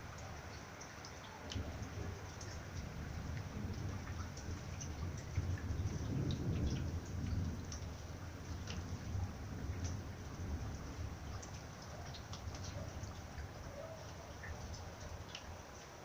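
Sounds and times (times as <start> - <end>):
drips ticking: 0.0 - 16.0
rain falling: 0.0 - 16.0
low rumble of thunder: 1.4 - 15.7.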